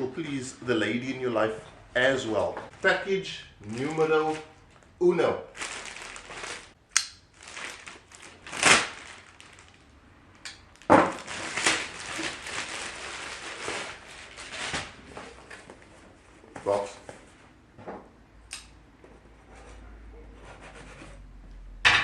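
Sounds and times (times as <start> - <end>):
packaging ripping: 5.5 - 6.8, 7.4 - 9.8, 10.8 - 15.0
packaging crinkling: 5.5 - 9.9, 10.7 - 15.1.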